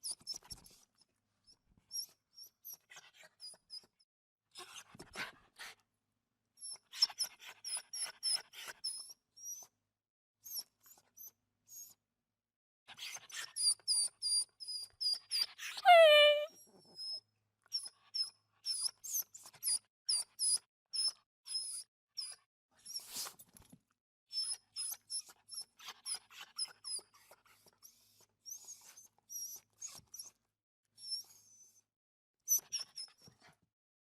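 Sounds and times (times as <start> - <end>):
dog whimpering: 15.8 - 16.5.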